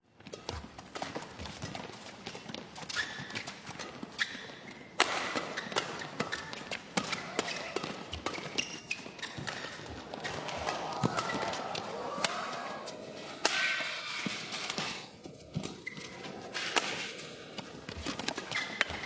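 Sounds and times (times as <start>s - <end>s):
rackets hitting shuttlecock: 5.0s - 19.0s.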